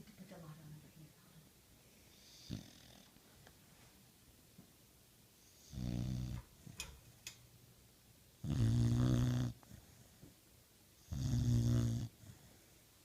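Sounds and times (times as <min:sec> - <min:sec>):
dog snoring: 0:02.1 - 0:03.1, 0:05.4 - 0:06.5, 0:08.4 - 0:10.0, 0:11.0 - 0:12.6.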